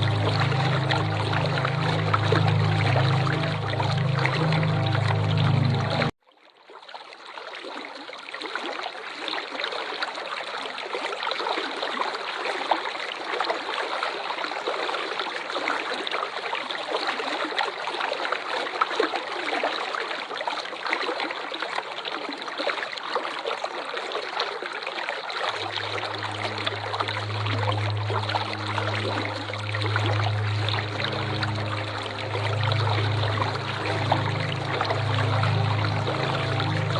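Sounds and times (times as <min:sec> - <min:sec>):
low steady hum: 0:00.0 - 0:06.1, 0:25.5 - 0:36.9
waterfall rushing: 0:00.0 - 0:06.1, 0:25.6 - 0:36.9.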